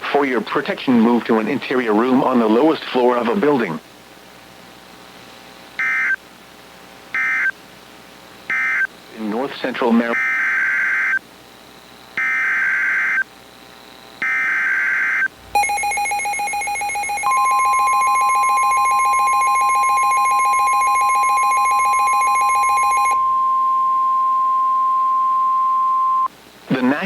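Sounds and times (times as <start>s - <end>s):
steady single-pitch warning tone: 5.8s - 6.2s, 7.1s - 7.6s, 8.5s - 8.9s, 12.1s - 13.3s, 14.2s - 26.3s
screeching digital header bursts: 14.2s - 23.4s
pulsing ringing alert tone: 15.6s - 23.5s.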